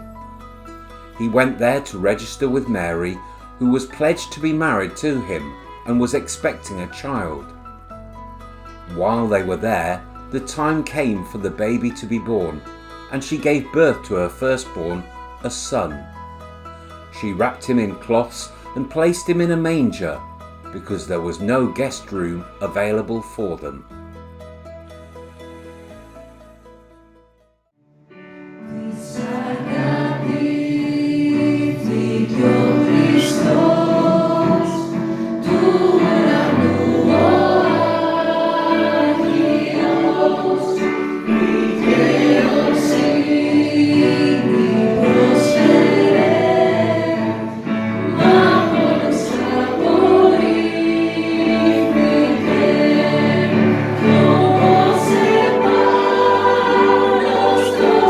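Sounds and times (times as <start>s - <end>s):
choir singing a hymn: 28.6s - 58.0s.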